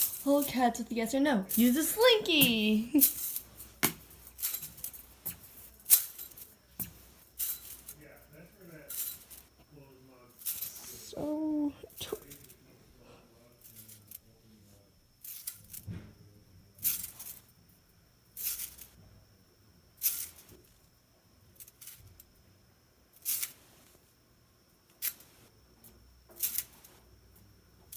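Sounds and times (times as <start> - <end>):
metal slinky coils clinking: 0.0 - 9.5, 10.3 - 12.6, 13.5 - 14.3, 15.2 - 15.8, 16.8 - 17.5, 18.3 - 19.0, 20.0 - 20.6, 21.6 - 22.3, 23.2 - 23.7, 24.9 - 25.5, 26.3 - 27.0.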